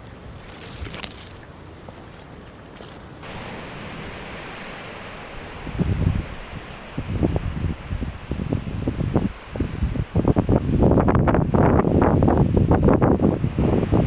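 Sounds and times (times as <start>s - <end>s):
strong wind blowing: 3.2s - 14.0s
wind gusts buffeting microphone: 3.2s - 14.0s.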